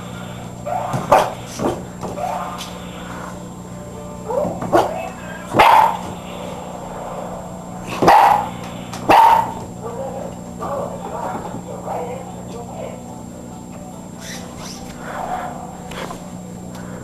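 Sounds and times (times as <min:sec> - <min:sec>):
puppy barking and yipping: 0:04.8 - 0:06.1, 0:09.1 - 0:09.6.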